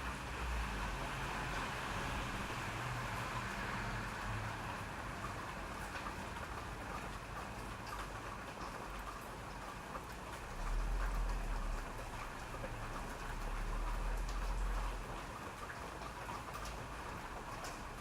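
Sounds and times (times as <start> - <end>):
steady rain: 0.0 - 18.0
raindrops ticking: 4.3 - 18.0.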